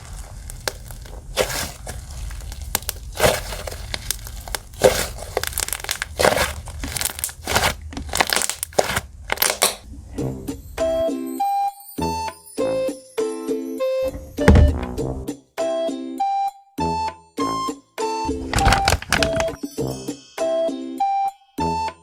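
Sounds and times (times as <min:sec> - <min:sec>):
slime squishing and popping: 0:00.0 - 0:09.8.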